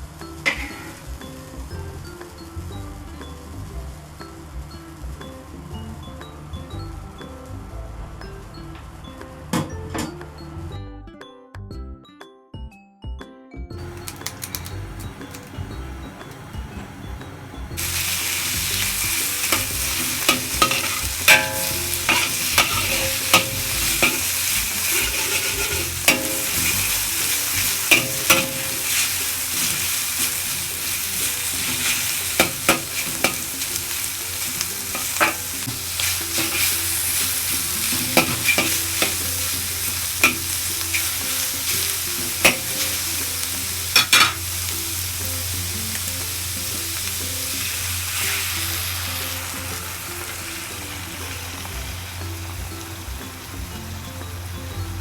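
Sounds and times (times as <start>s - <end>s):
food sizzling in a pan: 17.8s - 55.0s.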